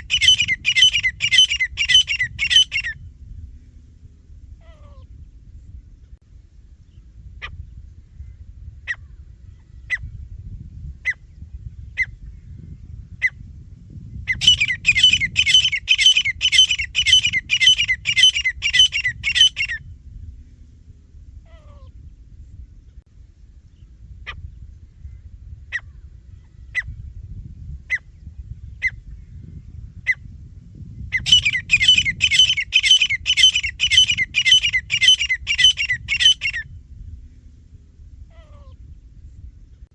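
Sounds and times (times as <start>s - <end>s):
francolin calling: 0.0s - 3.0s, 14.3s - 19.8s, 31.1s - 36.6s
low background rumble: 0.0s - 39.9s.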